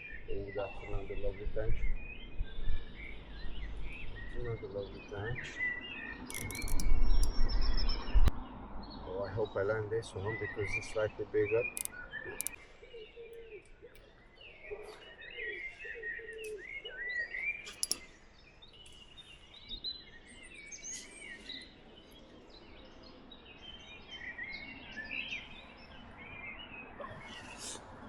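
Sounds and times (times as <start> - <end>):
small birds chirping: 0.0 - 28.0
sharp clicks: 6.3 - 7.5, 11.7 - 12.6, 17.7 - 18.0.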